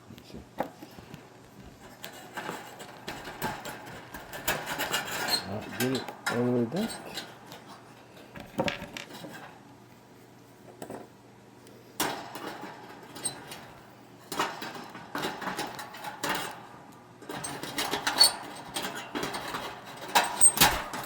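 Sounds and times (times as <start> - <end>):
sheet metal clicks knocks and scrapes: 1.8 - 7.8, 17.3 - 21.0.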